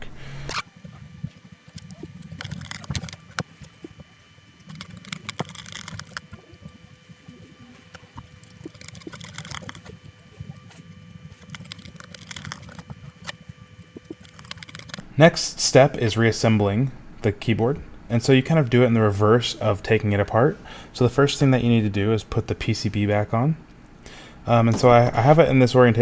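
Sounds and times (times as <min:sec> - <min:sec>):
faint steady hum: 0:00.0 - 0:26.0
plastic parts clicking: 0:01.8 - 0:03.5, 0:04.7 - 0:06.3, 0:07.9 - 0:09.9, 0:11.4 - 0:13.4, 0:14.1 - 0:15.0.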